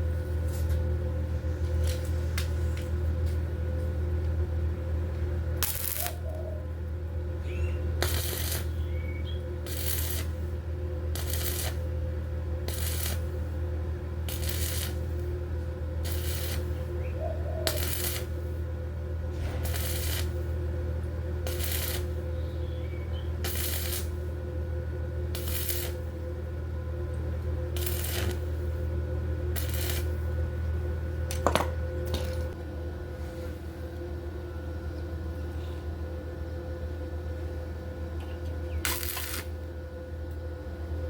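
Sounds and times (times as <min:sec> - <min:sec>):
welder electrical hum: 0:00.0 - 0:41.0
welding arc crackle: 0:01.6 - 0:03.4, 0:05.6 - 0:06.4, 0:07.9 - 0:18.6, 0:19.3 - 0:22.6, 0:23.2 - 0:24.4, 0:25.3 - 0:26.2, 0:27.6 - 0:30.4, 0:38.8 - 0:39.6.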